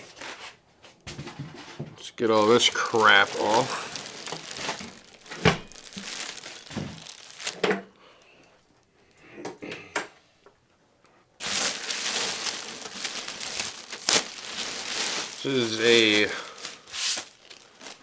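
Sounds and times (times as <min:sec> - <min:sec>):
plastic wrap crinkling: 0:02.0 - 0:07.8, 0:11.4 - 0:18.0.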